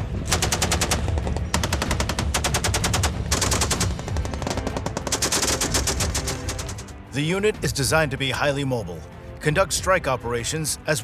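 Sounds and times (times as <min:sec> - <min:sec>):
machine gun firing bursts: 0:00.2 - 0:06.9.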